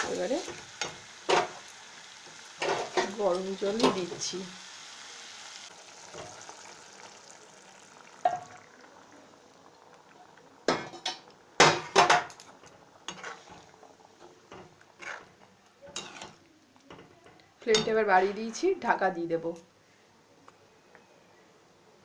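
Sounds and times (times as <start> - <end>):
metal spoon clinking against pan: 15.9 - 18.0.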